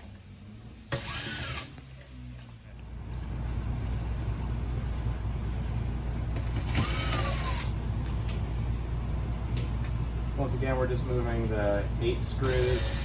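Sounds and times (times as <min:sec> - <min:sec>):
electric screwdriver humming: 0:12.4 - 0:13.0.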